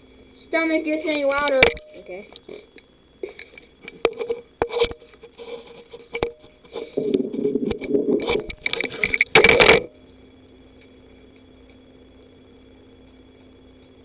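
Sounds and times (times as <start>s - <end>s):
stomach growling and gurgling: 6.7s - 9.9s.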